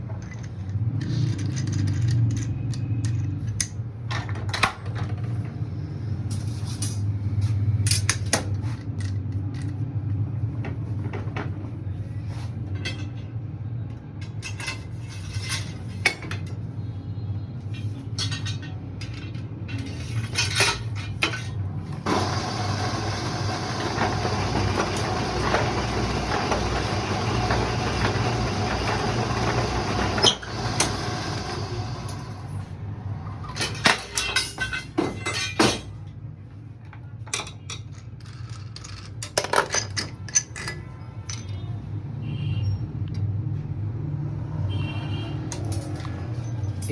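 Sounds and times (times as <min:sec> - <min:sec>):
tools clinking against metal: 0:12.7 - 0:13.3, 0:14.2 - 0:16.6, 0:17.7 - 0:22.0, 0:33.3 - 0:36.1, 0:37.2 - 0:41.7
lathe humming: 0:22.0 - 0:32.4.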